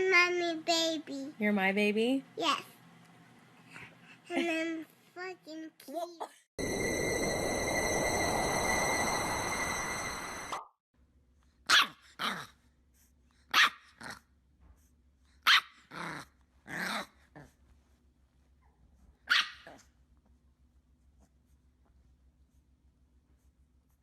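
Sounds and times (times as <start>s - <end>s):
dog barking: 11.7s - 12.4s, 13.5s - 13.9s, 15.4s - 15.8s, 19.3s - 19.8s.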